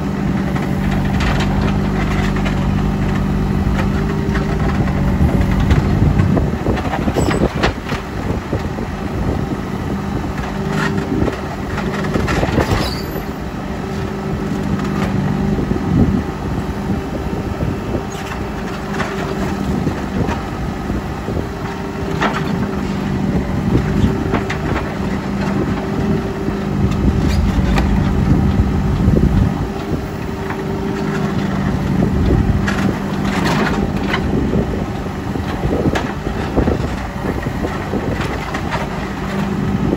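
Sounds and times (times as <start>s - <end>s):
diesel engine running: 0.0s - 39.9s
machinery knocks and clatters: 26.9s - 28.6s.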